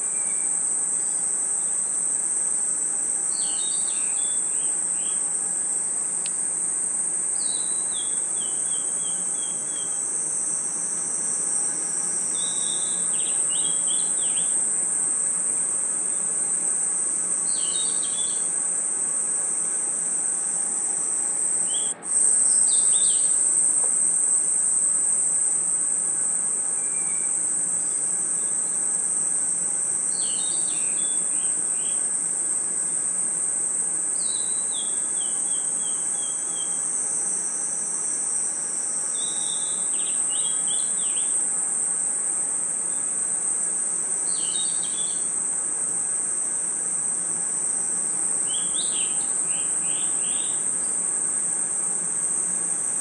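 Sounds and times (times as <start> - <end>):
crickets and insects chirring: 0.0 - 53.0
bird-like chirps: 17.5 - 18.5.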